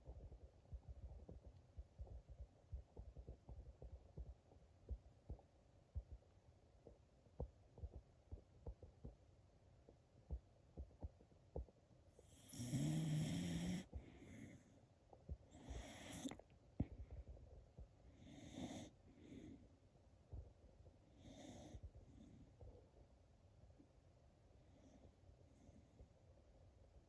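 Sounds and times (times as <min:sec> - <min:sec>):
dog snoring: 0:12.2 - 0:14.6, 0:15.5 - 0:16.4, 0:18.2 - 0:19.6, 0:21.2 - 0:22.3.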